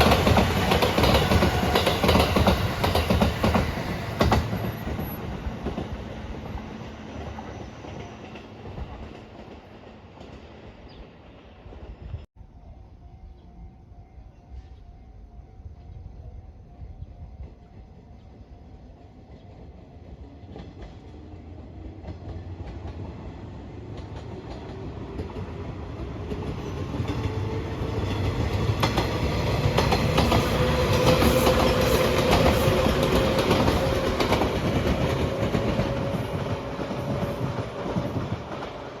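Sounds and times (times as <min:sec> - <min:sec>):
wheels clacking over rail joints: 0:00.0 - 0:10.5, 0:20.5 - 0:39.0
train passing: 0:00.0 - 0:39.0.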